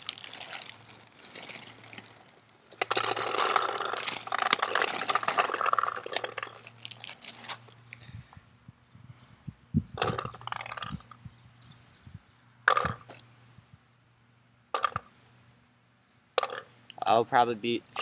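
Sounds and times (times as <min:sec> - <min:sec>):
paintballs rattling into hopper: 0:00.0 - 0:07.4.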